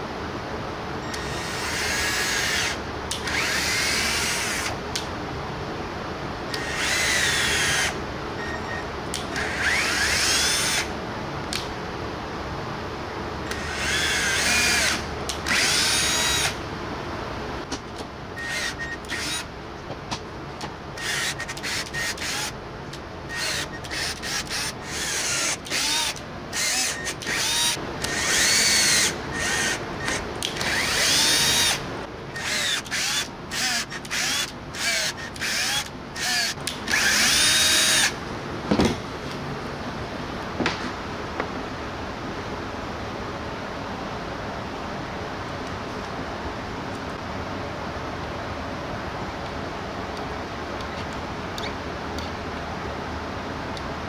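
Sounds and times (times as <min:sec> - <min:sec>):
power drill motor whirring: 0:01.0 - 0:05.1, 0:06.5 - 0:10.9, 0:13.4 - 0:16.6, 0:18.4 - 0:19.5, 0:21.0 - 0:22.6, 0:23.3 - 0:40.0.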